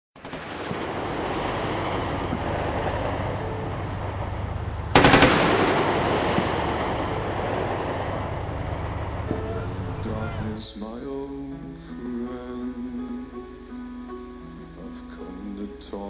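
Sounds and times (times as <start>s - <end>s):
rapid gunfire: 0.2s - 1.6s, 5.0s - 6.6s
noisy background: 0.4s - 11.6s.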